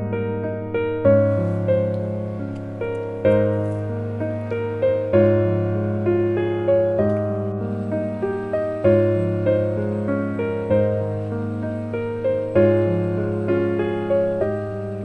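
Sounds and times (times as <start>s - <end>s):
gentle piano tune: 0.0s - 15.0s.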